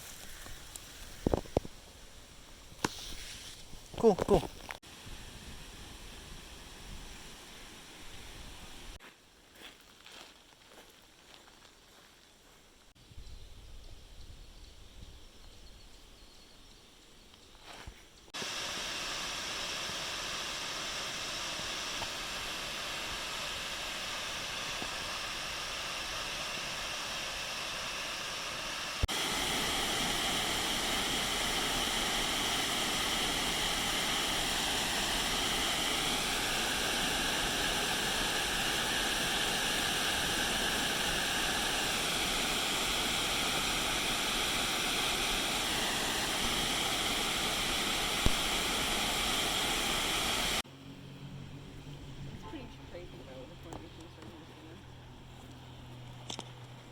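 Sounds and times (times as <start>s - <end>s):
waterfall rushing: 18.4s - 50.6s.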